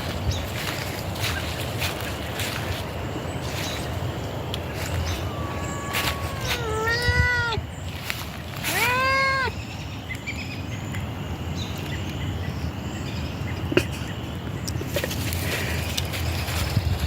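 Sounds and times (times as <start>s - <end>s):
faint bird chirps: 4.7s - 8.0s
cat meowing: 5.0s - 7.6s, 8.6s - 9.6s.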